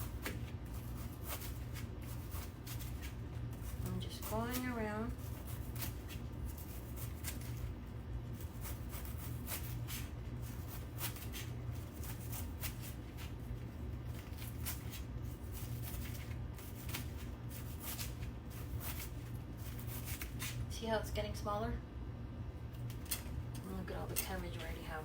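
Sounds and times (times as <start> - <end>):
knife slicing cabbage on board: 0.0 - 7.7, 8.3 - 20.6
steady low hum: 0.0 - 25.0.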